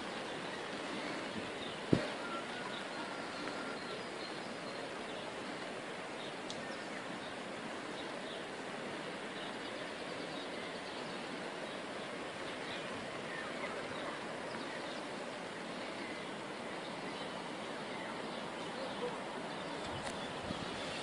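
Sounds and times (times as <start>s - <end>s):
steady outdoor rushing noise: 0.0s - 21.0s
faint high chirps: 1.9s - 4.4s.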